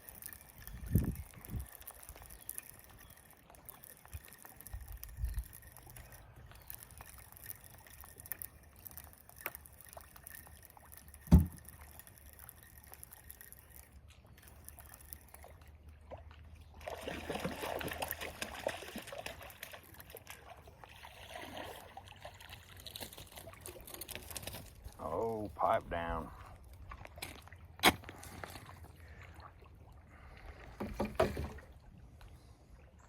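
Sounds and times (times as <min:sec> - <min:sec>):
water splashing and trickling: 0:00.0 - 0:33.0
loud dull thump: 0:11.3 - 0:11.6.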